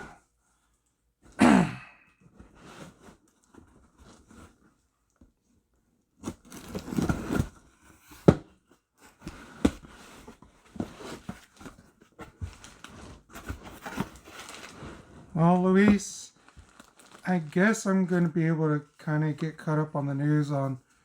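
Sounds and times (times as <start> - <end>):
cardboard box tearing: 6.2 - 8.4, 9.3 - 15.1
crumpled newspaper rustling: 13.8 - 19.7.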